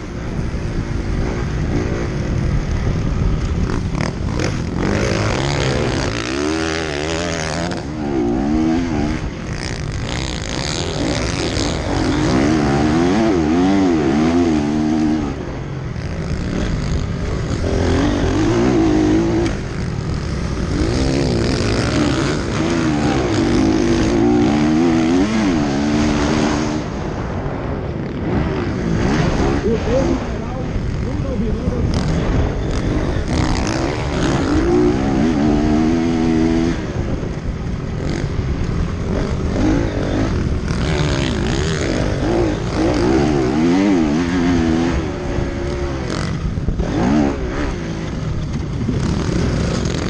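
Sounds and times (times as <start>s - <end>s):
motocross bike engines revving: 0.0s - 50.0s.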